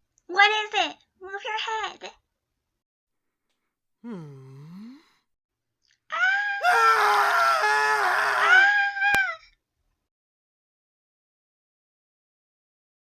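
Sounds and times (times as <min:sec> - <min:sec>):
low vocal grunt: 0:04.0 - 0:05.1
high-pitched scream: 0:06.1 - 0:09.4.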